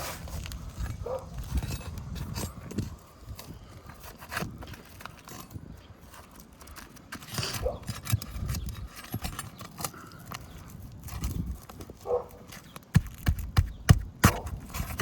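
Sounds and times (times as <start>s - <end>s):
roofing tools knocking and scraping: 0.8s - 15.0s.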